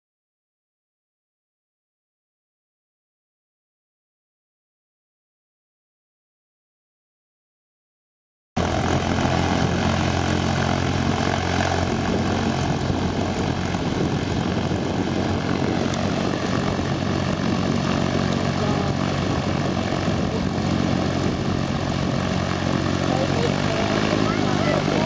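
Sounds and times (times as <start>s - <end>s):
light aircraft engine and propeller: 8.6s - 25.0s.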